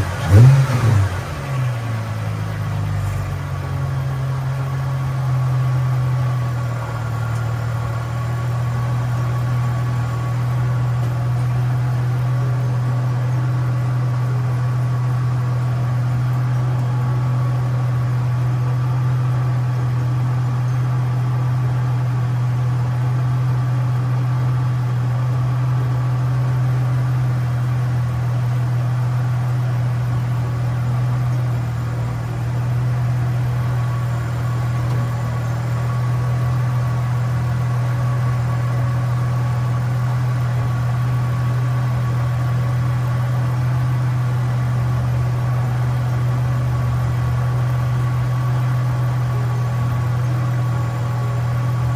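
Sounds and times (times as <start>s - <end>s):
car engine idling: 0.0s - 51.9s.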